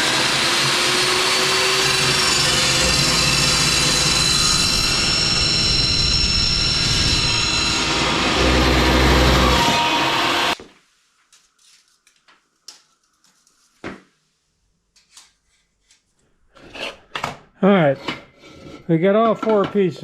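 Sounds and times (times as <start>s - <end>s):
power saw cutting steel: 0.0s - 10.6s.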